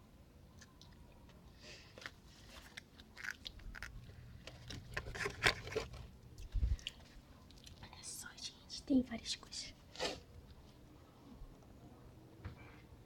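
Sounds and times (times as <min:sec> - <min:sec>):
small crunching noises: 0:00.5 - 0:07.9.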